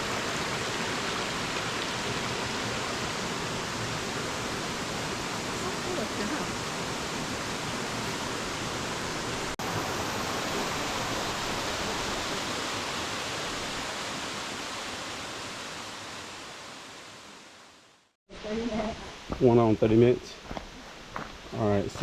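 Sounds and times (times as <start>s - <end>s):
waterfall roaring: 0.0s - 17.4s.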